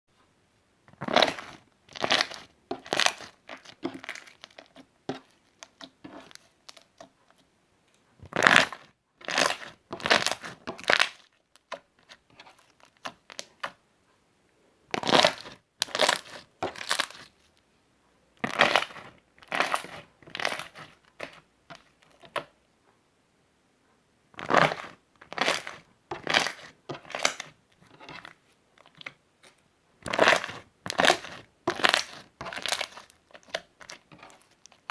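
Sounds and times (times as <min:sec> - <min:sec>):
hands squeezing slime: 0:01.0 - 0:07.0, 0:08.3 - 0:13.7, 0:14.9 - 0:17.4, 0:18.4 - 0:21.4, 0:24.4 - 0:28.3, 0:30.0 - 0:34.9.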